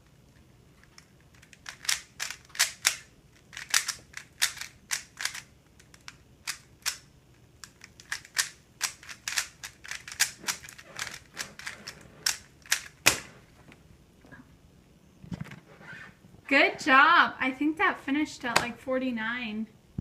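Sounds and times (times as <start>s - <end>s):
puzzle cube clicking: 0.8s - 13.3s.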